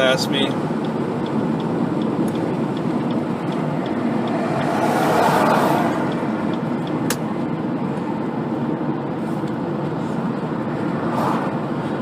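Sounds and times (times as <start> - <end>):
car road and engine noise: 0.0 - 12.0.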